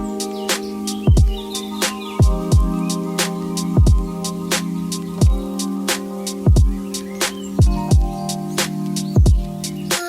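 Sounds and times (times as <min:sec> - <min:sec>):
held chord: 0:00.0 - 0:10.0
deep kick drums: 0:01.1 - 0:01.4, 0:02.2 - 0:02.8, 0:03.8 - 0:04.2, 0:05.2 - 0:05.5, 0:06.5 - 0:06.8, 0:07.6 - 0:08.2, 0:09.2 - 0:09.5.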